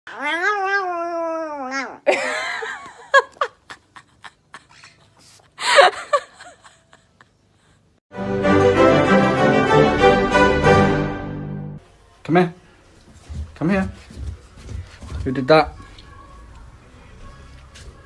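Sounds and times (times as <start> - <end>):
pet animal crying: 0.1 - 2.1.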